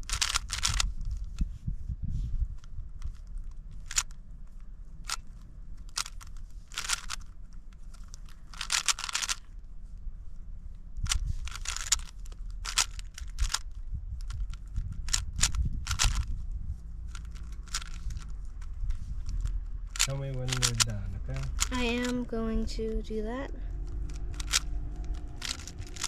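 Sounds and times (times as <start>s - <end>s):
puzzle cube layers clicking: 0.0s - 1.4s, 2.9s - 4.2s, 5.1s - 9.5s, 11.0s - 16.3s, 17.1s - 22.2s, 23.9s - 26.0s
low rumble: 0.0s - 26.0s.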